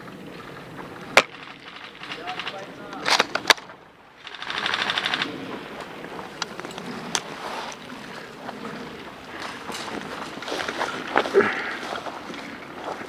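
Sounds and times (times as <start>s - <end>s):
rustling wind on microphone: 0.0s - 13.0s
airsoft guns firing: 1.2s - 5.4s.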